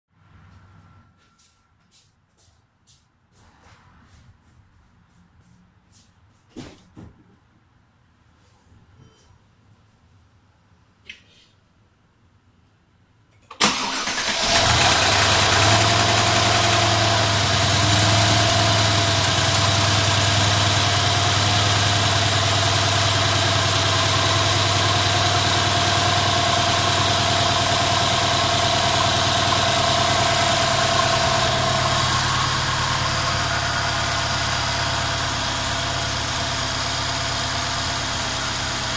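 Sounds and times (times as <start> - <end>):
car engine cranking and idling: 13.6 - 38.9
steady engine whine: 14.4 - 38.9.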